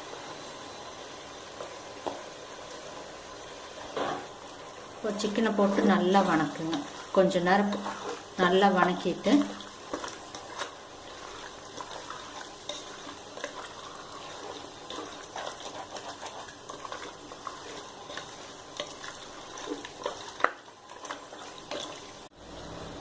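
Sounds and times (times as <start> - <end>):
chicken sizzling in oil: 0.0 - 23.0
spoon scraping a pot: 9.9 - 22.0.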